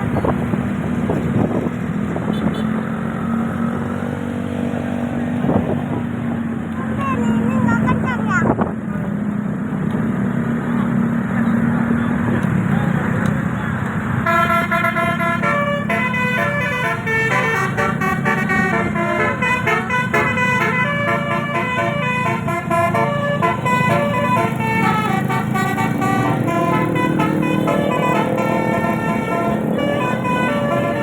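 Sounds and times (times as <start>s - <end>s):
low rumble of vehicle noise: 0.0s - 31.0s
air horns playing a melody: 14.2s - 31.0s.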